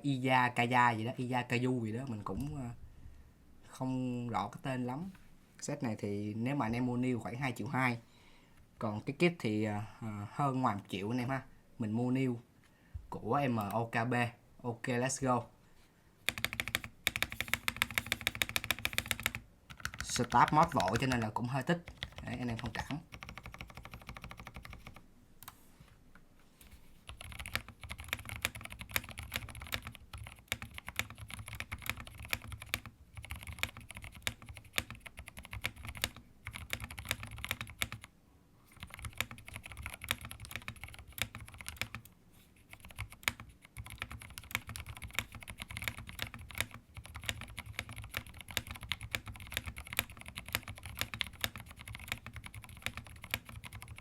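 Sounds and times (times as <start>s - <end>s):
fast typing on keyboard: 16.3s - 25.0s, 27.1s - 38.1s, 38.7s - 54.0s.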